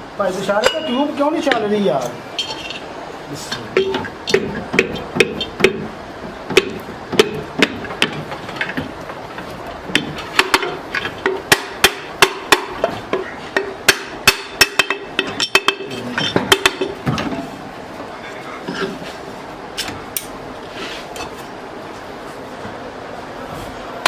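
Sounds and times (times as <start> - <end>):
faint steady hum: 0.0 - 24.0
hand hammer striking: 3.8 - 5.9, 6.5 - 8.9, 9.9 - 17.3.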